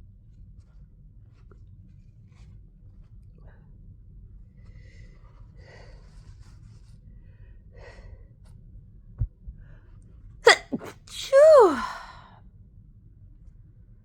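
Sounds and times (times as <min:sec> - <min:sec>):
person gasping breaths: 0:10.5 - 0:12.3.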